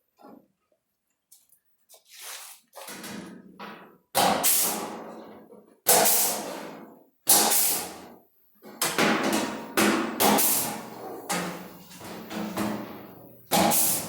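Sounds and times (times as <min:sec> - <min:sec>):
hammer striking sheet metal: 0:07.3 - 0:08.0, 0:08.8 - 0:11.7, 0:13.5 - 0:14.0.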